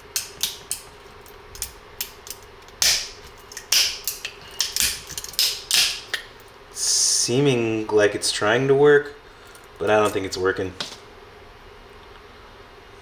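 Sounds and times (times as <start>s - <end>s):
plastic clicks and cracks: 0.1s - 6.3s.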